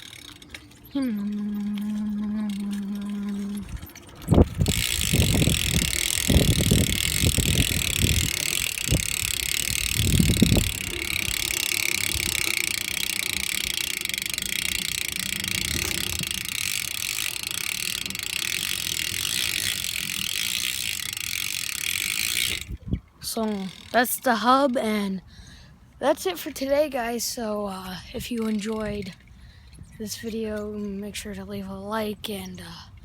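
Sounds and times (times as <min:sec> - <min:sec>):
bike hub ratchet buzz: 0:00.0 - 0:24.4.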